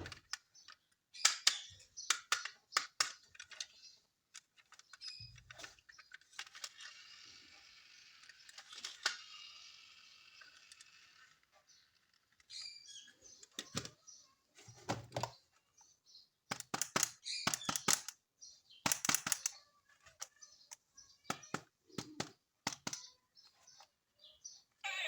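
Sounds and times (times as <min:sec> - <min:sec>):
plastic clicks and taps: 0:00.0 - 0:03.7, 0:16.5 - 0:18.2, 0:18.8 - 0:23.1.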